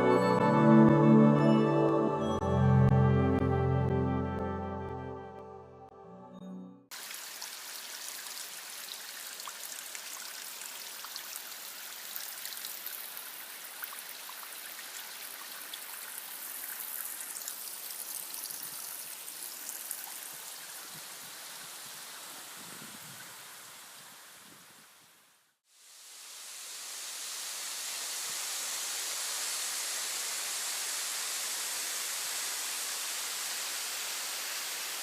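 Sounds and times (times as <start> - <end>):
stream water rushing: 6.9 - 24.4, 26.0 - 35.0.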